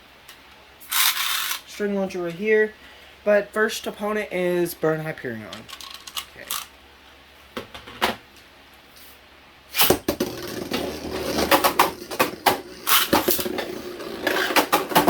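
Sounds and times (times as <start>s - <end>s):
spinning tops clacking together: 0.8s - 1.7s, 5.6s - 6.7s, 11.5s - 13.7s
spinning tops launched: 0.8s - 1.7s, 9.7s - 15.0s
spinning tops whirring: 0.8s - 1.7s, 9.8s - 15.0s.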